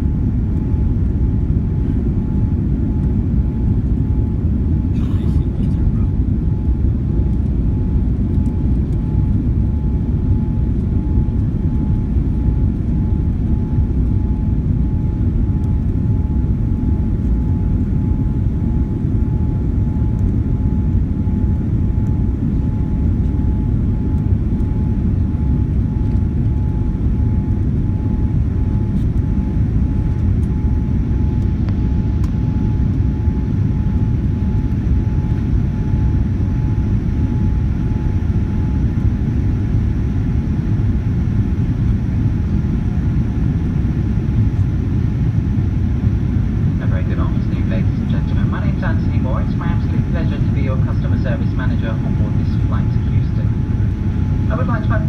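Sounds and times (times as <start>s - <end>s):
jet engine rumble: 0.0s - 55.0s
thin steady whine: 46.2s - 55.0s.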